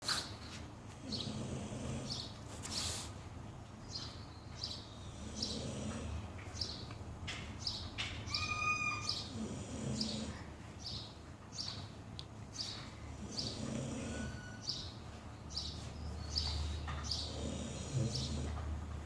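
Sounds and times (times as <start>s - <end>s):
dog snoring: 1.0s - 2.3s, 5.0s - 6.3s, 9.3s - 10.5s, 13.1s - 14.6s, 17.1s - 18.7s.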